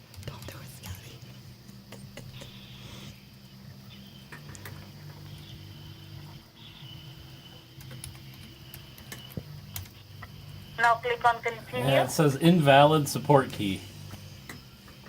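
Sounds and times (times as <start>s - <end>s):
steady low hum: 0.0s - 15.0s
thin high whine: 1.9s - 15.0s
computer keyboard keystrokes: 7.8s - 9.9s.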